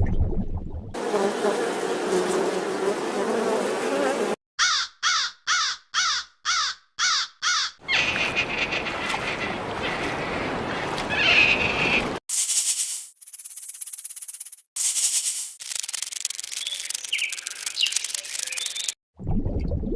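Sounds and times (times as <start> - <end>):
animal call: 4.6 - 12.2.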